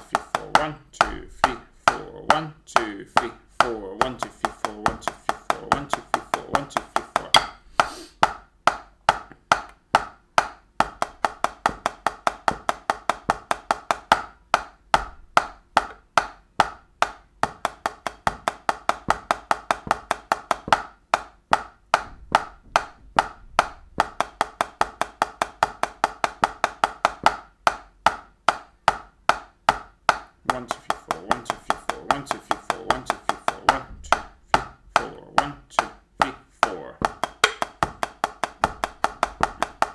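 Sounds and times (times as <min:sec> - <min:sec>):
drumsticks playing single strokes: 0:34.9 - 0:37.9.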